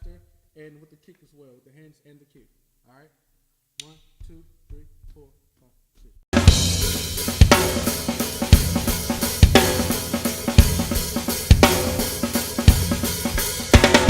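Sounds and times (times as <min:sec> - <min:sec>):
drum kit groove: 0:06.3 - 0:14.0
kick drum accents: 0:06.4 - 0:14.0.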